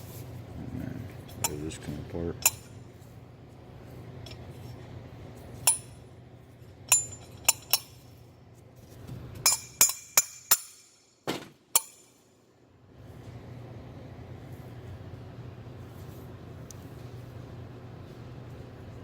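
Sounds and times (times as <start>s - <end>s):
metal parts clinking: 6.9s - 8.1s.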